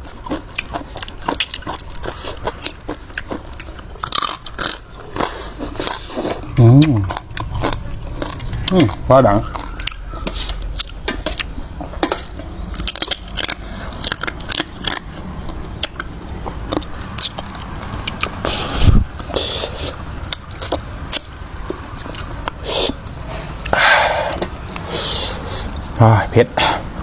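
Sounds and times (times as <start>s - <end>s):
utensils clinking on a plate: 8.2s - 15.0s.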